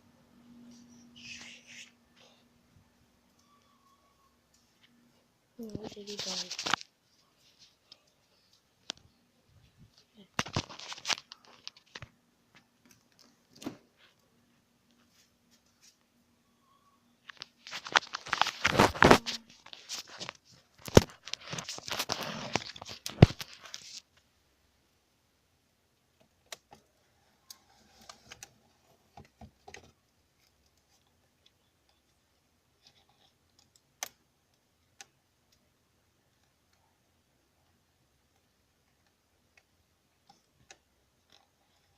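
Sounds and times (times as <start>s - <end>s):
plastic crinkling and rustling: 5.6s - 8.0s, 9.7s - 14.2s, 17.2s - 24.2s.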